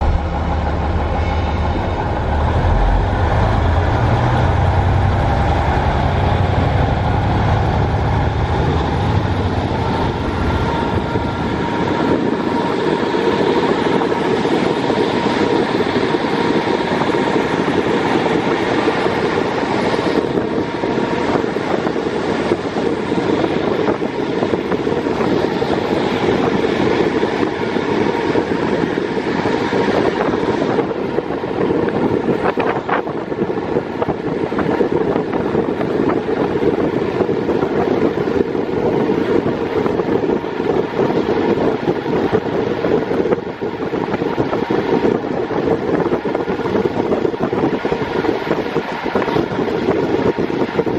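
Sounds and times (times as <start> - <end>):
diesel engine drone and whine: 0.0 - 50.9
wheels on rails: 0.0 - 50.9
wind rush: 0.0 - 50.9.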